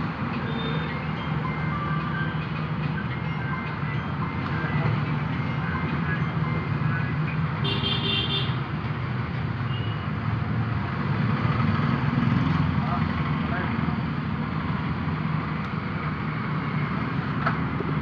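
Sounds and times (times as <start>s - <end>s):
road traffic: 0.0s - 18.0s.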